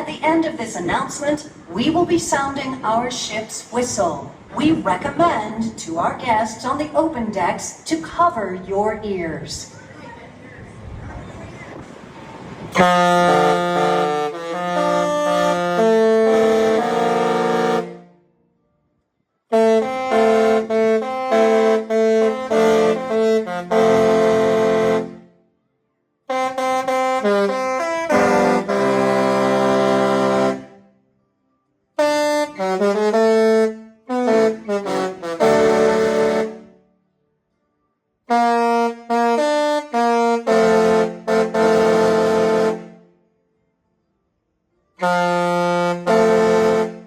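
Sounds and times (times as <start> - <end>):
ship's musical horn chords: 12.7 - 18.4, 19.5 - 25.5, 26.3 - 31.0, 32.0 - 36.9, 38.3 - 43.2, 45.0 - 47.0.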